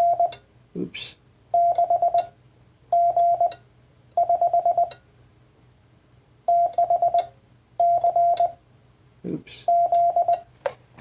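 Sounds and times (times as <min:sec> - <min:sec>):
morse code sidetone beeps: 0:00.0 - 0:00.4, 0:01.6 - 0:02.3, 0:02.9 - 0:03.6, 0:04.2 - 0:05.0, 0:06.5 - 0:08.6, 0:09.7 - 0:10.4.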